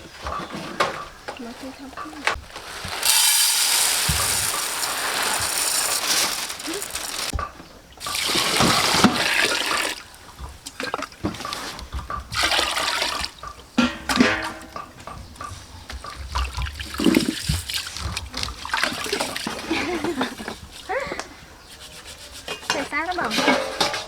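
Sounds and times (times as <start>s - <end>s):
water pouring and splashing: 1.4s - 14.8s, 15.9s - 21.0s.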